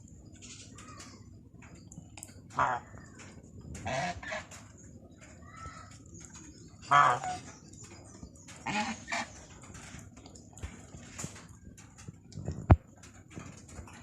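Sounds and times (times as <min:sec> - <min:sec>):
black swans calling: 0:06.8 - 0:07.6, 0:08.6 - 0:09.4.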